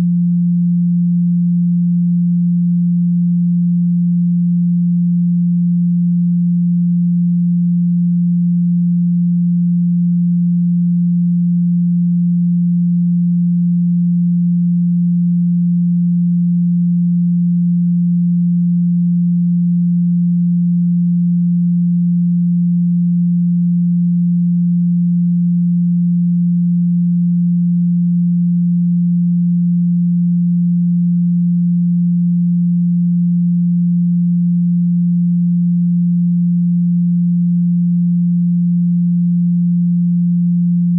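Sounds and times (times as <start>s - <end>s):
steady low pure tone: 0.0s - 40.9s.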